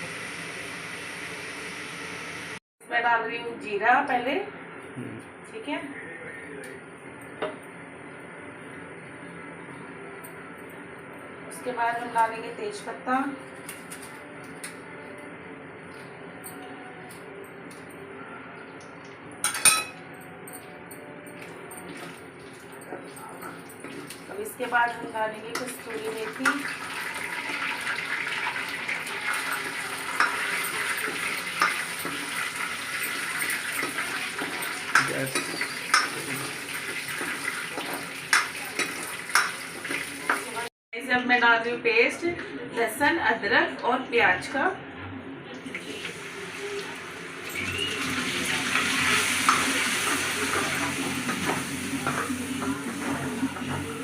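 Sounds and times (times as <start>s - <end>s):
oil sizzling in a pan: 0.0s - 2.6s, 23.5s - 40.7s, 45.8s - 54.0s
spoon scraping a pan: 29.3s - 40.4s
spoon clicking against pan: 34.9s - 36.2s.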